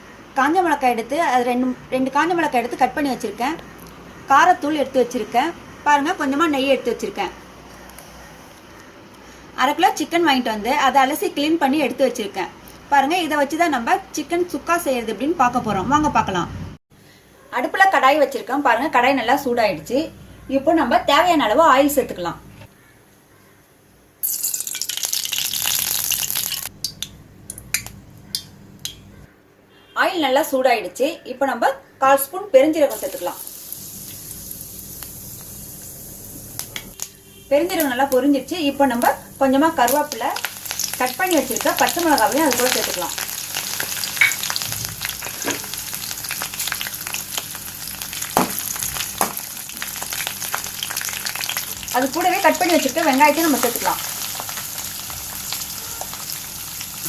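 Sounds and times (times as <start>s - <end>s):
hot oil sizzling and crackling: 24.2s - 27.9s, 32.9s - 57.0s.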